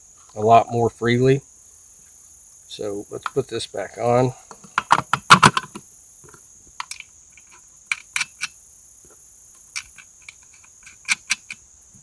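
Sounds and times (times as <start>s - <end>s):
high insect chirr: 0.0s - 12.0s
plastic cover clicking and knocking: 4.5s - 5.8s.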